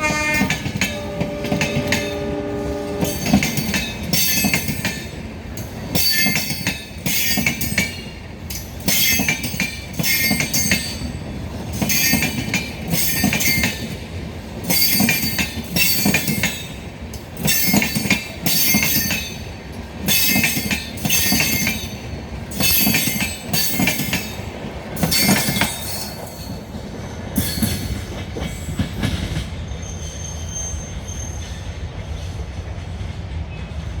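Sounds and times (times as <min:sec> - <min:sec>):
train rolling rumble: 0:00.0 - 0:34.0
train wheels squealing: 0:25.0 - 0:34.0.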